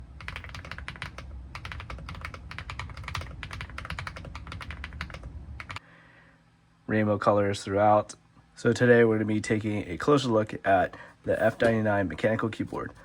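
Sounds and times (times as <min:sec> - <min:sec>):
mechanical keyboard typing: 0:00.2 - 0:05.8.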